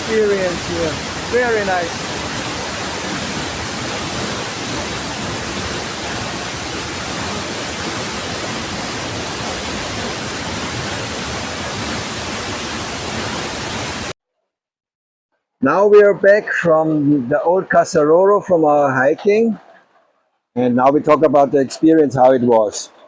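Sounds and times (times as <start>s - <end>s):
waterfall rushing: 0.0s - 14.2s.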